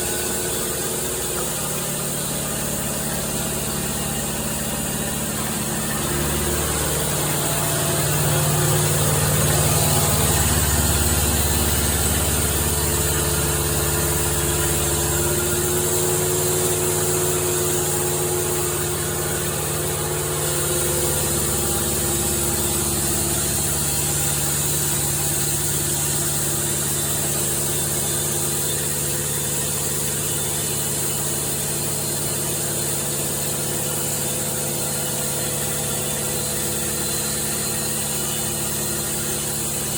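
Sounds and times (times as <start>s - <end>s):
engine running: 0.0s - 39.9s.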